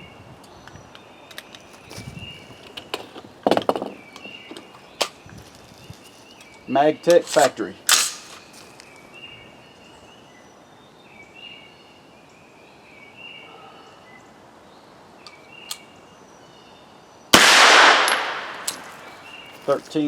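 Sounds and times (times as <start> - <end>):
gunshot with ringing tail: 17.4 - 19.0.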